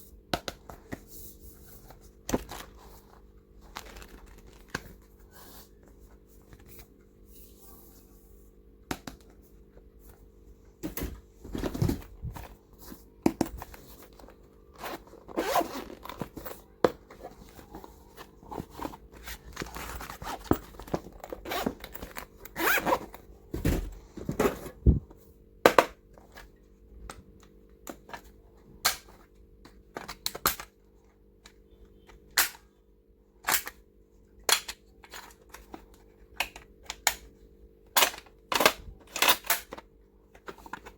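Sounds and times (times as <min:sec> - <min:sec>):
low steady hum: 0:00.0 - 0:40.9
plastic rustling and scraping: 0:00.8 - 0:08.2, 0:10.9 - 0:25.1.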